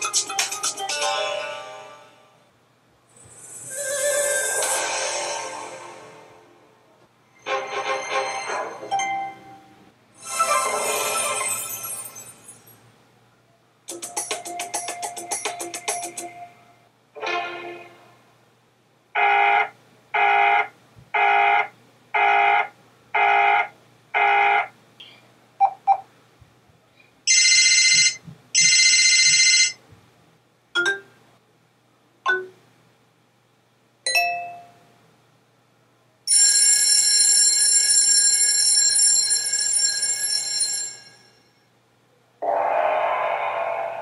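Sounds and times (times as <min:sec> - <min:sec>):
long bright high tone: 0:03.3 - 0:06.6, 0:07.4 - 0:12.6.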